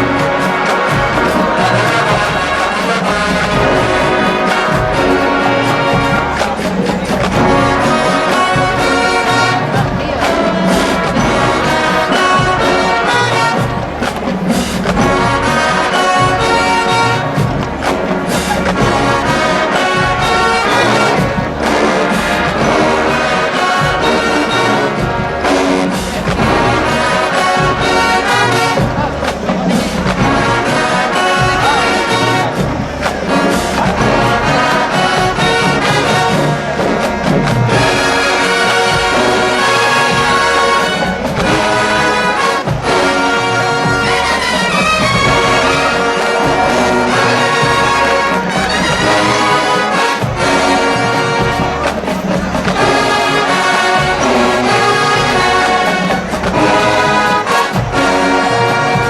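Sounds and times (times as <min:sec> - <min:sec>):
drumline beat: 0:00.0 - 0:59.0
trombones and trumpets: 0:00.0 - 0:59.0.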